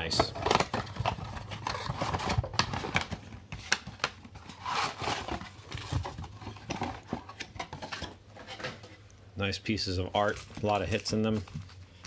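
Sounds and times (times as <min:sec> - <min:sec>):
cards rustling: 0:10.1 - 0:12.0.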